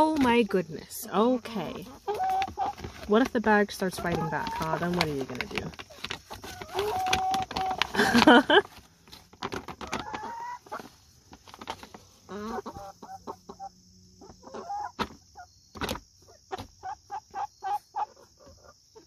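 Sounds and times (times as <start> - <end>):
young chickens clucking: 0.0 - 19.0.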